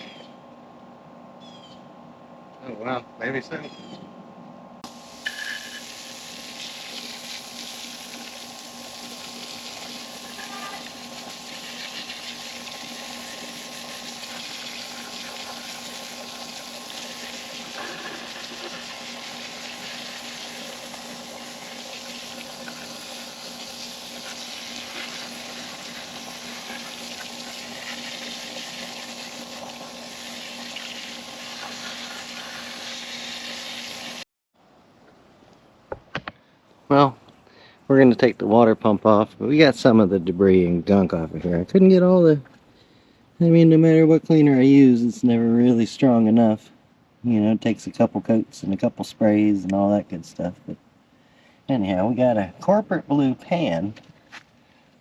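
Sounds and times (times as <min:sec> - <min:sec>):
steady hum: 0:00.0 - 0:34.2
water jet spraying: 0:04.8 - 0:34.2.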